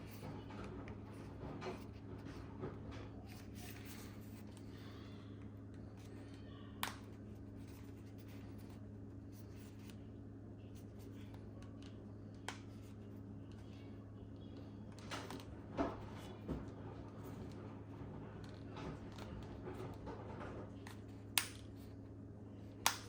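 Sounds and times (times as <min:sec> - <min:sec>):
rustling and scraping of ear pad: 0:00.0 - 0:04.9.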